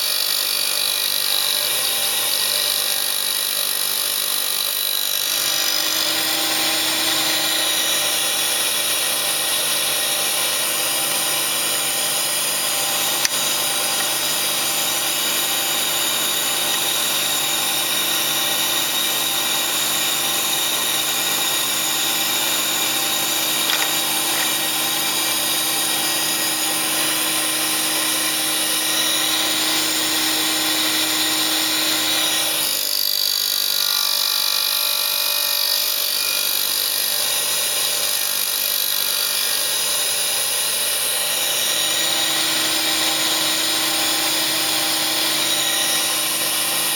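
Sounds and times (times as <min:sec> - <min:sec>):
grinding machine running: 0:05.4 - 0:28.5.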